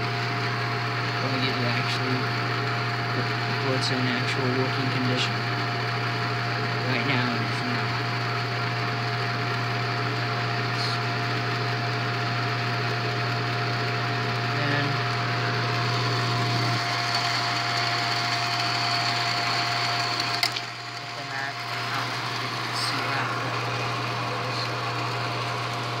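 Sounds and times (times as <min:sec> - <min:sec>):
film projector mechanical hum: 0:00.0 - 0:26.0.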